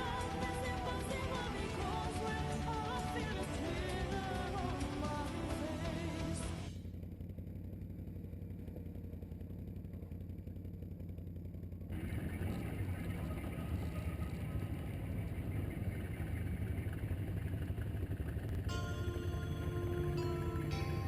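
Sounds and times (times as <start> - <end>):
atv engine running: 0.0 - 21.0
wind: 6.8 - 21.0.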